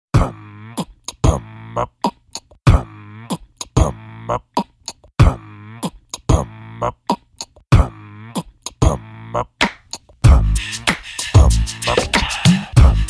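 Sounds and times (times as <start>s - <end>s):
instrumental hip hop beat: 10.2s - 13.0s.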